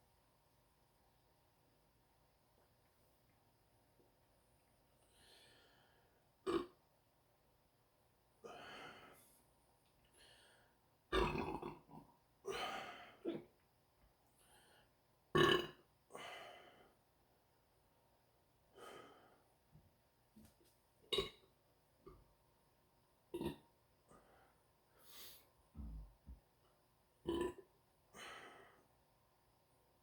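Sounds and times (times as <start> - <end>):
person burping: 6.5 - 6.8, 11.1 - 13.5, 15.4 - 16.3, 21.1 - 21.4, 23.3 - 23.6, 27.2 - 27.7.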